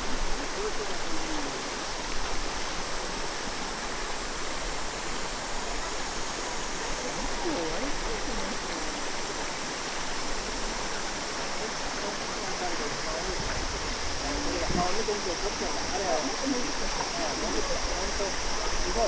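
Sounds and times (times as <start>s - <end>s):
waterfall rushing: 0.0s - 19.0s
faint voices calling: 6.7s - 19.0s.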